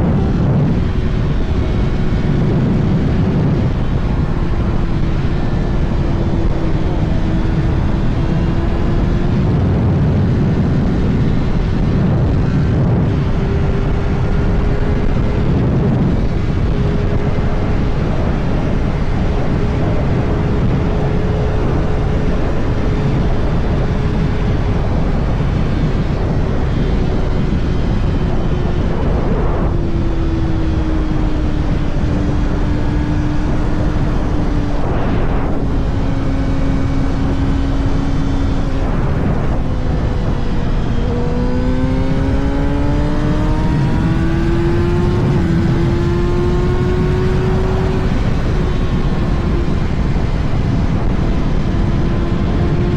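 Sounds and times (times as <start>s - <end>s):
motorcycle engine cruising: 0.0s - 52.9s
wind rush: 0.0s - 52.9s.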